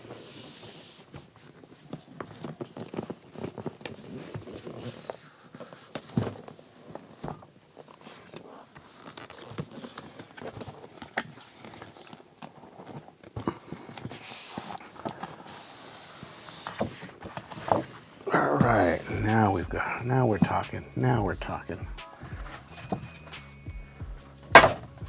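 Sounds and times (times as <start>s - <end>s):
cardboard box taps and knocks: 24.6s - 25.0s.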